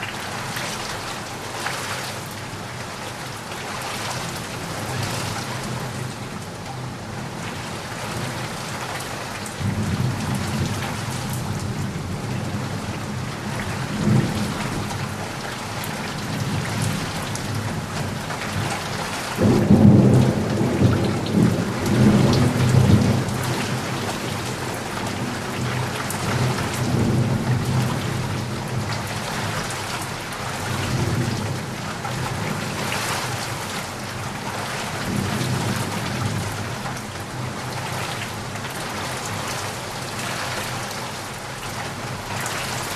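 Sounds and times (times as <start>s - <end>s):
heavy rain falling: 0.0s - 42.9s
thunder rumbling and cracking: 16.3s - 29.7s.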